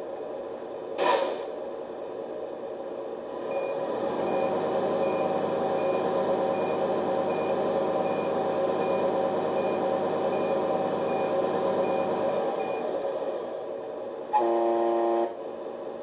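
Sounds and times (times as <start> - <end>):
simulated truck engine running: 1.6 - 16.0
electronic reversing beeper: 3.5 - 6.0.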